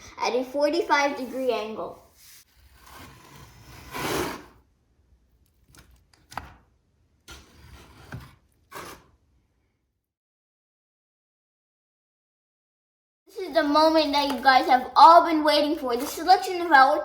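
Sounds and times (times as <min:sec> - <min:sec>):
trowel scraping adhesive: 0:01.0 - 0:04.7, 0:07.2 - 0:09.3.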